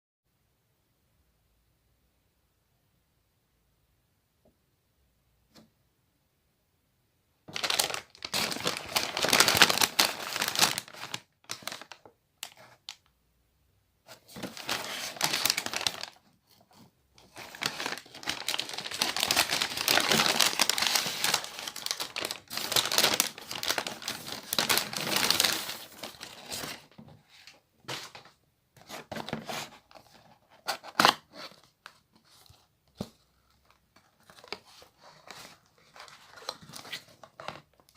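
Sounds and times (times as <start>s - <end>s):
plastic packaging crinkling: 7.5s - 13.0s, 14.1s - 27.0s.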